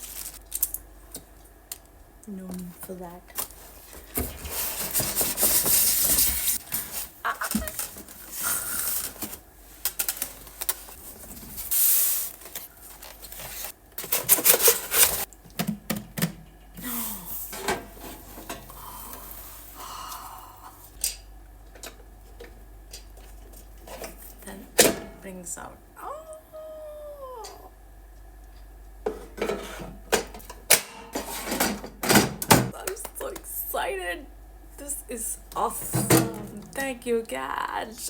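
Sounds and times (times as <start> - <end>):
packaging rustling and crinkling: 0.0 - 0.8, 3.4 - 15.3.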